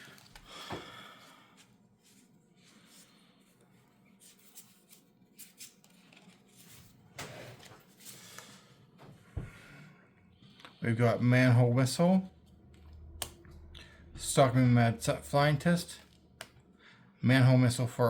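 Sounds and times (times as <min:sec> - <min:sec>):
trading cards and wrapper rustling: 0:00.0 - 0:00.5.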